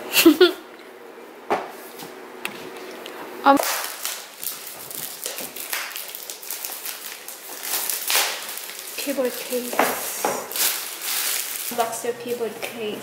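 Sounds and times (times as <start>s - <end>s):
packaging rustling and crinkling: 3.6s - 12.6s.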